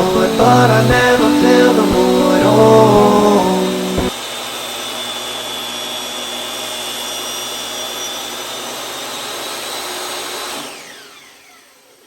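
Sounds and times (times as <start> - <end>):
thin high whine: 0.0 - 4.1
table saw cutting wood: 0.0 - 12.0.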